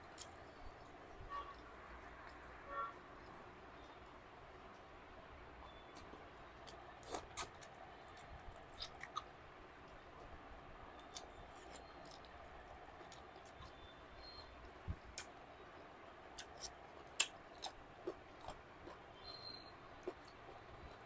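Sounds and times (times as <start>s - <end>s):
person chewing: 6.0s - 9.3s, 11.0s - 12.3s, 16.4s - 19.0s, 20.0s - 21.0s.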